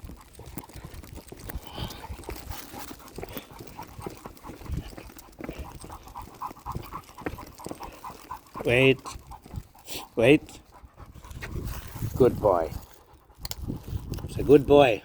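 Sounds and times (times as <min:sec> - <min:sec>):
dog sniffling and snuffling: 0:00.0 - 0:14.6
dog quick short breaths: 0:00.4 - 0:12.2.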